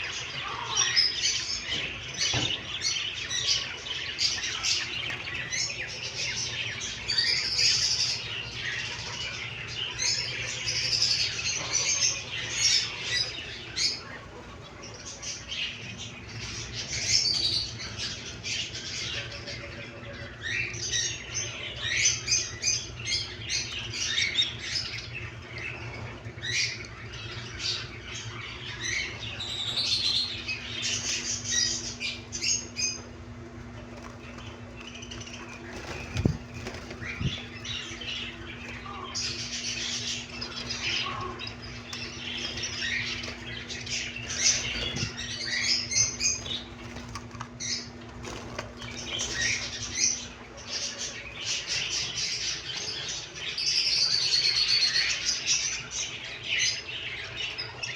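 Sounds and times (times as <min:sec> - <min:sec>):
caged birds chirping and squawking: 0:00.0 - 0:57.9
steady low hum: 0:00.0 - 0:57.9
wings flapping: 0:33.0 - 0:51.7.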